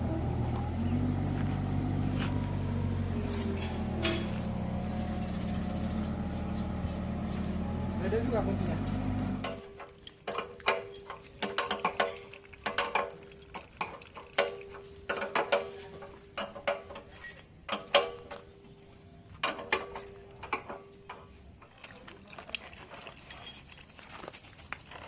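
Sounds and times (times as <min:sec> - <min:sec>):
tools clinking on steel: 0:09.4 - 0:13.1.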